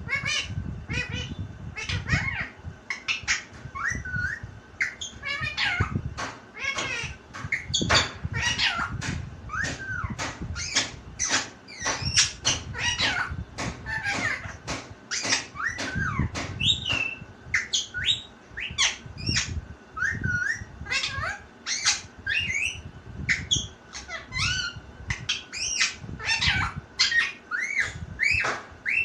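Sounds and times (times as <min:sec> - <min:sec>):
parrot squawking and whistling: 0:00.1 - 0:06.0, 0:06.6 - 0:29.0.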